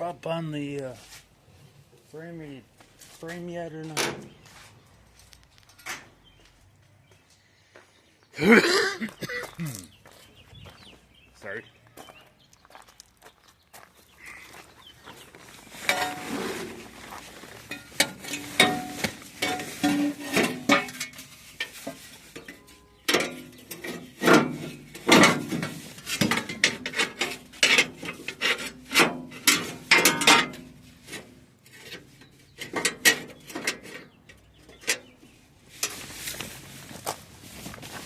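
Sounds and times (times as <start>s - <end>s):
sheet metal clanking and scraping: 15.8s - 17.0s, 17.6s - 35.2s.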